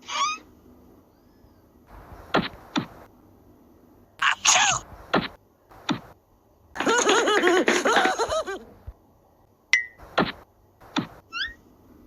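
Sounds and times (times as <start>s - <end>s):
squeaky cartoon voices: 0.0s - 0.5s, 4.2s - 4.8s, 11.3s - 11.6s.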